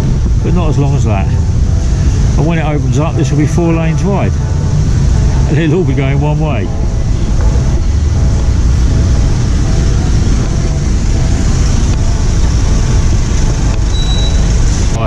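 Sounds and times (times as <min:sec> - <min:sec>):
street traffic rumble: 0:00.0 - 0:15.0
high beep: 0:13.9 - 0:14.5.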